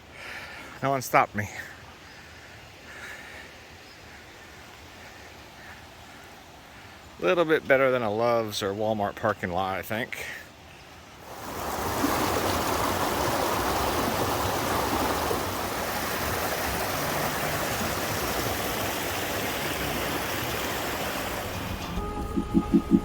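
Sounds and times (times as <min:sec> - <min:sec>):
flowing water rushing: 0:11.2 - 0:23.0
low rhythmic pulsing: 0:21.1 - 0:23.0.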